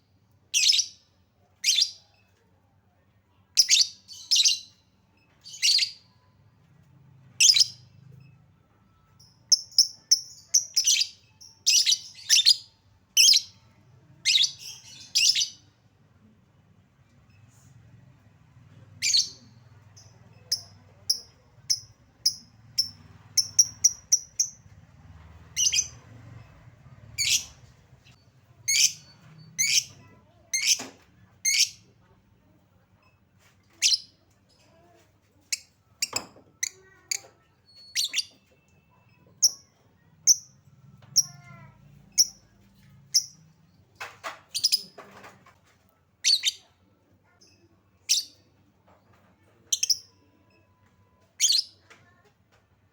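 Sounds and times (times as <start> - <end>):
lovebird chirping: 19.0 - 24.6, 25.5 - 26.0.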